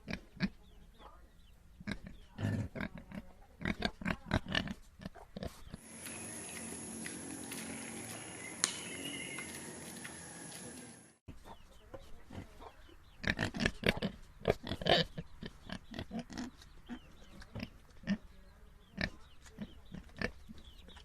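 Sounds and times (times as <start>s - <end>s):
pigs grunting: 1.9s - 5.8s, 12.3s - 18.2s.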